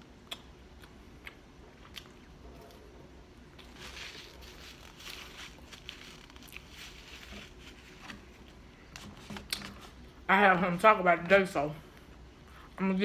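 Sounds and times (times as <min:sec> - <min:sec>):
chewing crunchy food: 0:00.0 - 0:07.6.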